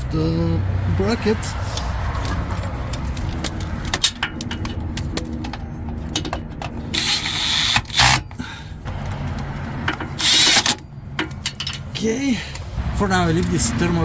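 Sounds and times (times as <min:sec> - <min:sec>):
ratchet wrench clicking: 0:06.9 - 0:08.2, 0:10.2 - 0:11.9.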